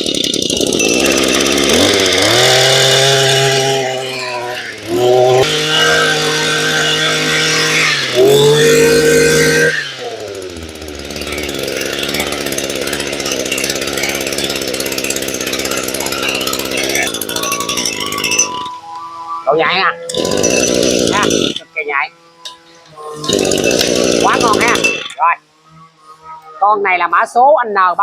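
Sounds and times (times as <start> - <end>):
brush cutter engine revving: 0.0 - 28.0.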